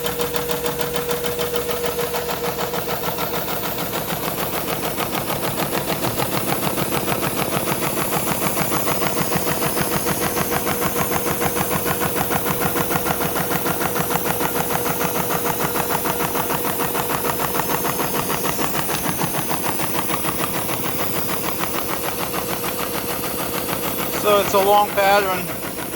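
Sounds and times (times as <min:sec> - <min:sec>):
air cooler hum: 0:22.9 - 0:25.9.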